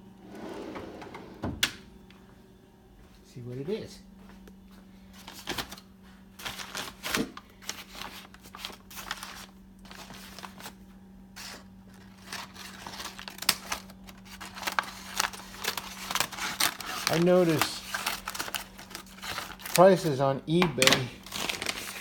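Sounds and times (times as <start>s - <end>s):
packaging rustling and tearing: 6.4s - 10.8s, 11.4s - 20.2s, 20.8s - 22.0s.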